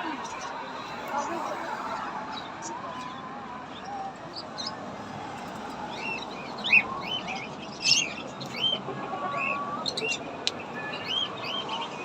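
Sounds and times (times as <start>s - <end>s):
small birds chirping: 0.0s - 4.9s, 5.8s - 12.0s.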